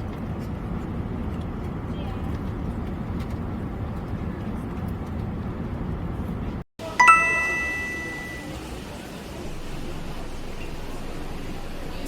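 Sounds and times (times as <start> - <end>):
two-note chime: 7.0 - 8.6.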